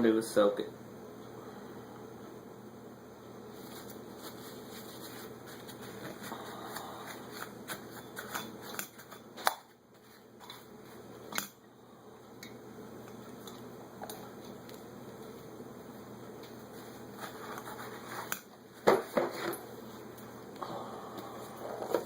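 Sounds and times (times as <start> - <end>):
steady background hum: 0.0 - 22.0.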